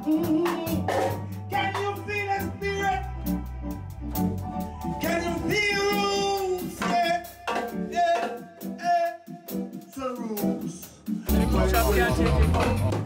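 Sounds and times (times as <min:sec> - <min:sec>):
person singing: 0:00.0 - 0:03.5, 0:04.7 - 0:13.0
bass: 0:00.0 - 0:06.9, 0:11.2 - 0:13.0
drums: 0:00.0 - 0:13.0.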